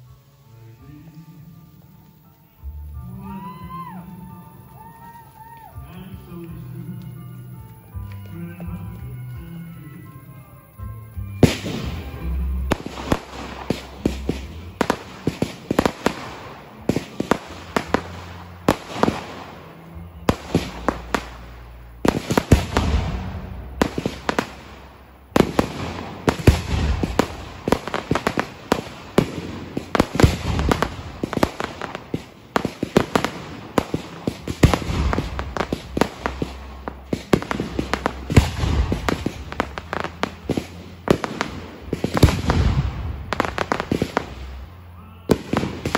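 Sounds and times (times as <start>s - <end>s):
music: 0.0s - 45.9s
fireworks bangs and crackles: 1.7s - 45.9s.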